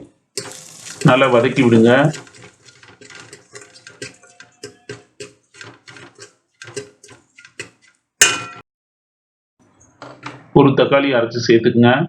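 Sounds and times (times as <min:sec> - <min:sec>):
metal spoon scraping a pan: 0:00.4 - 0:08.6
metallic clang: 0:06.1 - 0:08.6.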